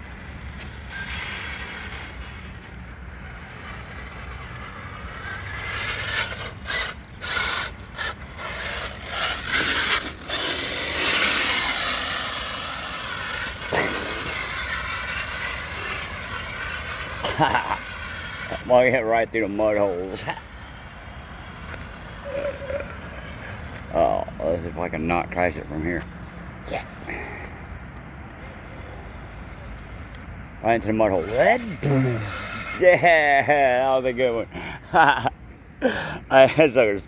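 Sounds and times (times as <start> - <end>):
toy truck electric motor whining: 0.0 - 27.6, 28.4 - 34.5.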